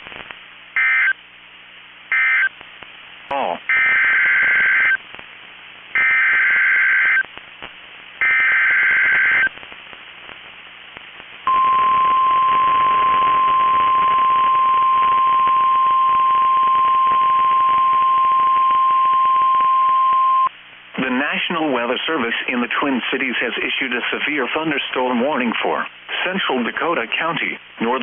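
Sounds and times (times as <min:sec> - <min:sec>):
steady alarm tone: 0:03.7 - 0:05.0, 0:06.0 - 0:07.2, 0:08.2 - 0:09.5, 0:11.5 - 0:20.5
high-pitched data warble: 0:11.5 - 0:20.5.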